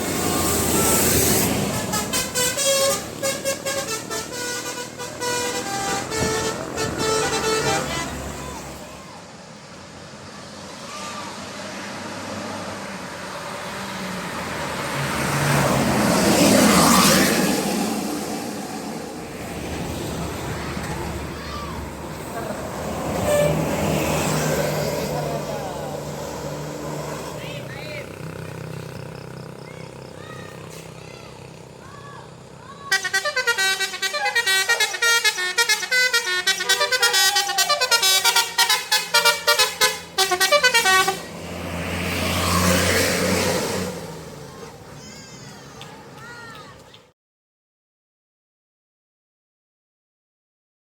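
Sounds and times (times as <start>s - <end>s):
bus horn playing a tune: 0.0s - 9.0s, 22.6s - 29.1s, 32.8s - 41.7s
vehicle passing by: 0.0s - 46.9s
tyre noise on road: 0.0s - 47.1s.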